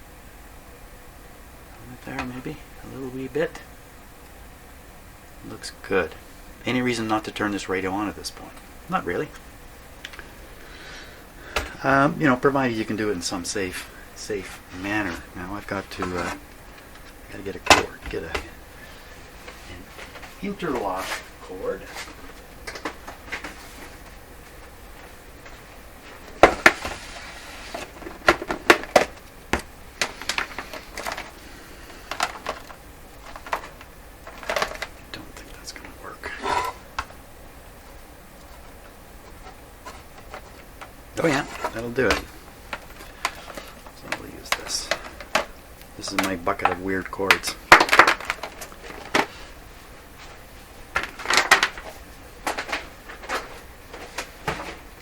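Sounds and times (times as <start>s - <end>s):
electrical cords clattering: 11.4s - 55.0s.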